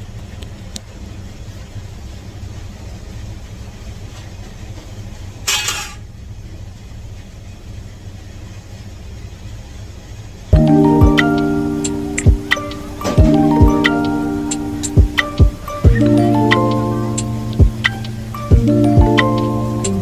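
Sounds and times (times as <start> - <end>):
low hum: 10.6 - 20.0.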